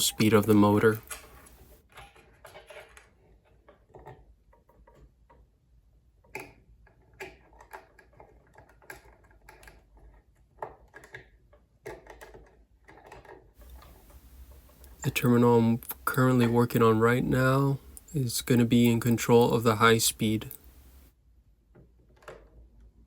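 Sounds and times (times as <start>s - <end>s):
faint clicks and taps of tools: 17.5s - 19.6s, 20.2s - 21.1s.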